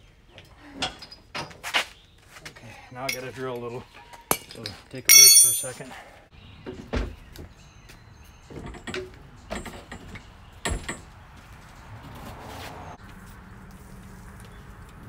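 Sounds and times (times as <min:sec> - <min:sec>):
metal tools clunking: 0:03.1 - 0:03.4, 0:04.3 - 0:05.8.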